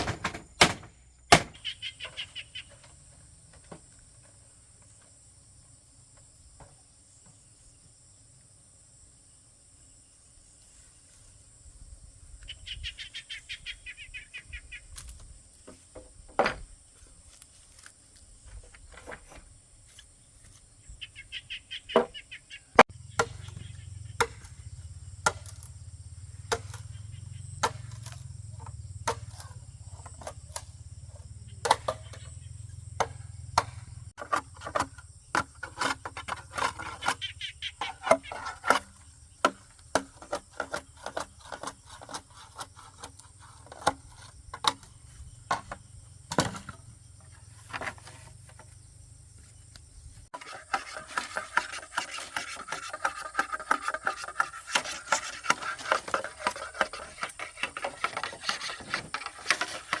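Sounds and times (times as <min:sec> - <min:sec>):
scraping and rubbing on wood: 0:34.2 - 0:46.8, 0:50.4 - 1:00.0.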